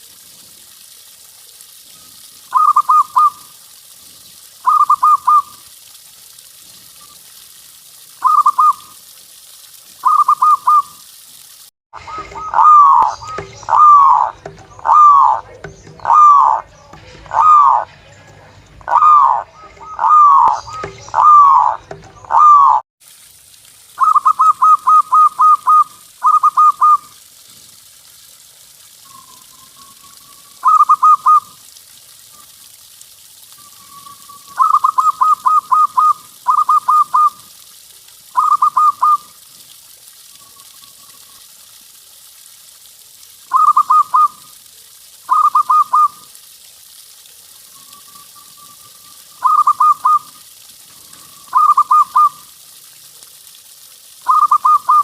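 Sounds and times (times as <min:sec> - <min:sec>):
dove cooing: 0:02.5 - 0:03.4, 0:12.2 - 0:16.7, 0:17.3 - 0:17.9, 0:18.9 - 0:22.8, 0:30.6 - 0:31.5, 0:34.5 - 0:37.4, 0:43.5 - 0:44.4, 0:45.3 - 0:46.2, 0:49.4 - 0:50.3, 0:51.2 - 0:52.4
loud bird call: 0:02.5 - 0:03.4, 0:04.6 - 0:05.5, 0:12.1 - 0:15.4, 0:45.3 - 0:46.2, 0:49.4 - 0:50.3, 0:51.5 - 0:52.4.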